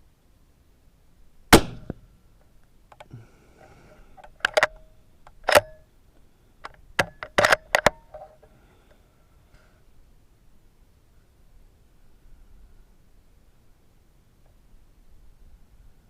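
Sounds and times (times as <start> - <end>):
rifle bolt metallic clicks: 4.2 - 5.8, 6.6 - 8.3.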